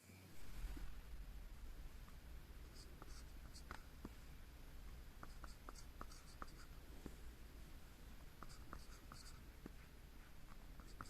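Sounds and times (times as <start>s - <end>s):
scratching of writing on paper: 2.7s - 3.9s, 5.2s - 7.2s, 8.3s - 11.0s.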